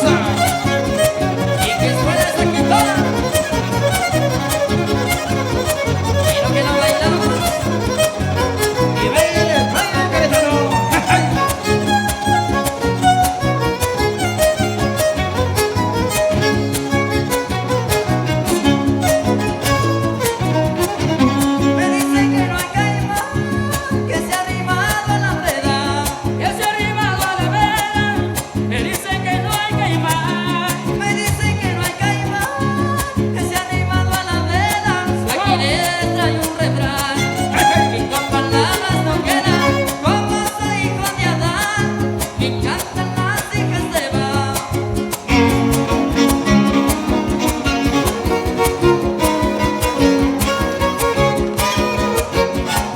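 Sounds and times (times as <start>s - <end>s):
violin melody: 0.0s - 23.3s, 37.0s - 40.7s, 45.2s - 52.9s
rhythmic guitar strumming: 0.0s - 52.9s.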